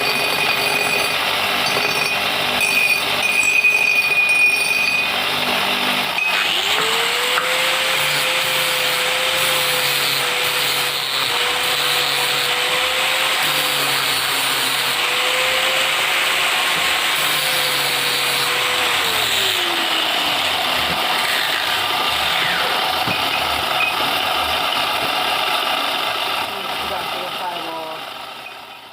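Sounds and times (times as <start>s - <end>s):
power tool motor running: 0.0s - 28.9s
motor whine spinning down: 19.7s - 26.3s.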